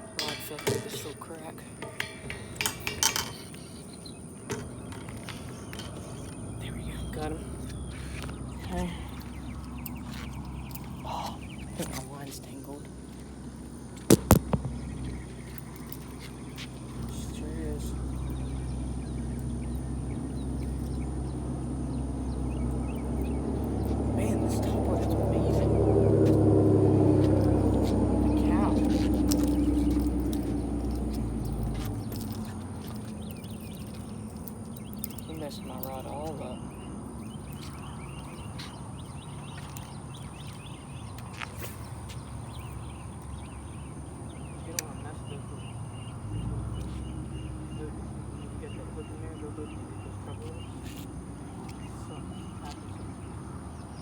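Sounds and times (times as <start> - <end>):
faint bird chirps: 0.0 - 26.3
low engine drone: 0.0 - 53.8
sharp clicks: 14.0 - 16.3.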